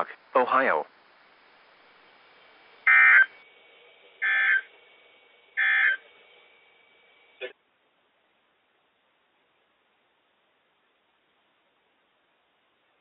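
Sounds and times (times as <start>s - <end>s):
warbling data tones: 0.0s - 7.5s.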